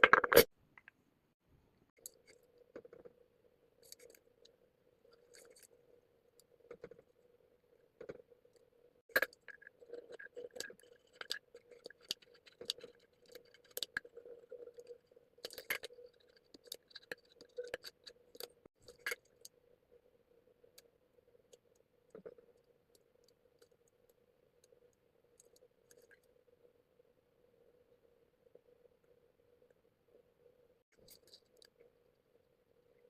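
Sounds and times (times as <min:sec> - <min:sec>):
craft materials clicking and scraping: 0:00.0 - 0:00.9.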